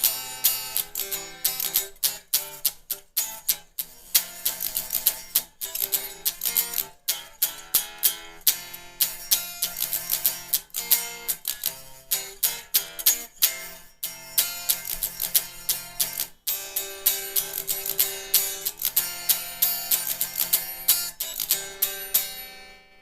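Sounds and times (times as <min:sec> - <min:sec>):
guitar strumming chords: 0:00.0 - 0:23.0.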